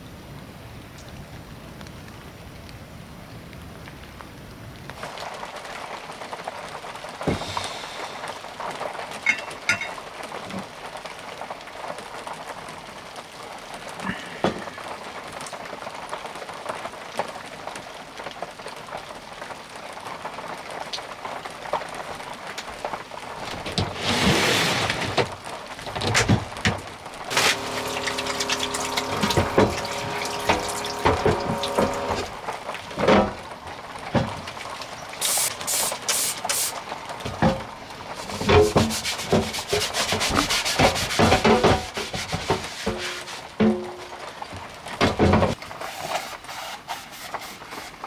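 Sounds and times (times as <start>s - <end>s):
rain falling: 0.1s - 26.0s, 26.9s - 41.1s
water pouring into a container: 27.3s - 33.0s.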